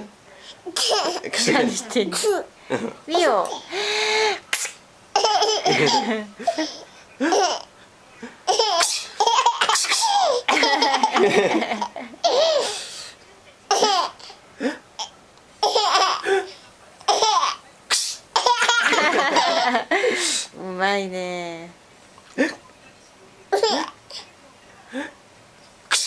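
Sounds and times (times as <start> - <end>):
baby laughing: 0.7 - 2.5, 5.2 - 7.7, 8.5 - 12.7, 13.7 - 14.2, 15.6 - 16.3, 18.4 - 19.8.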